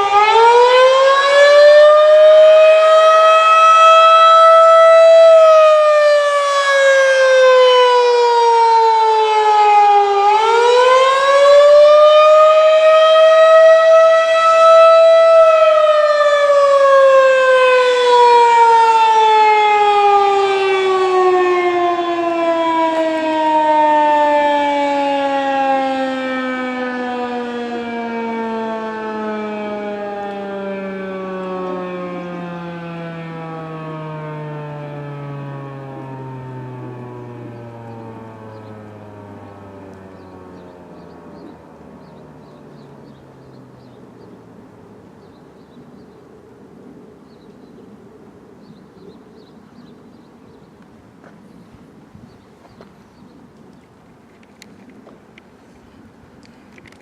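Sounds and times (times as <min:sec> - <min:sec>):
warning siren wailing: 0:00.0 - 0:44.8.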